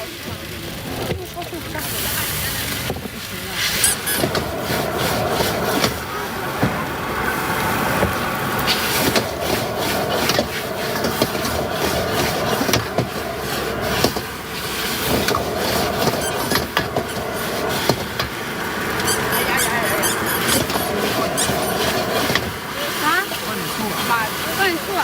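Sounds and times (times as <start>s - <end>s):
steady background noise: 0.0s - 25.0s
metal spatula scraping on cooking surface: 1.9s - 6.0s, 18.9s - 25.0s.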